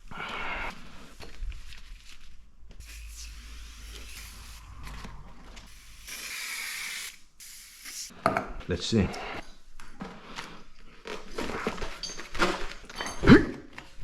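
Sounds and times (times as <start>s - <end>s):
aerosol spray hissing: 2.8s - 4.9s, 5.7s - 8.1s.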